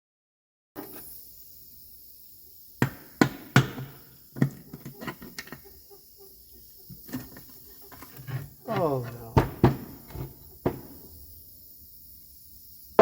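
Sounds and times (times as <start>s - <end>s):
metal knocks and clanks: 8.0s - 11.0s.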